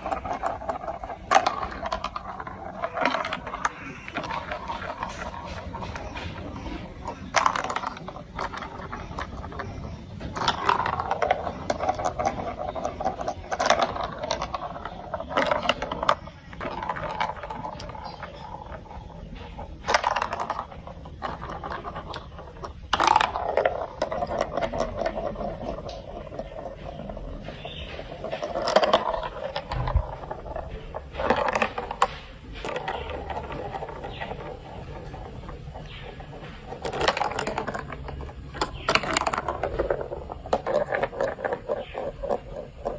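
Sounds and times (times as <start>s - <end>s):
marbles clacking on plastic: 0.0s - 42.9s
marbles rolling on plastic track: 0.0s - 42.9s.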